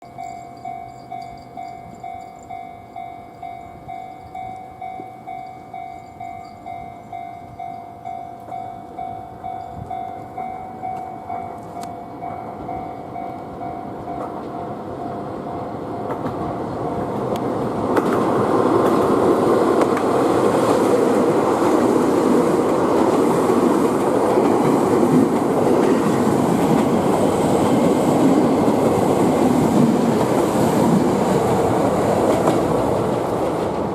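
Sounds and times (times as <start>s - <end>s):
level-crossing bell dinging: 0.0s - 16.2s
train wheels rumbling on rails: 0.0s - 33.9s.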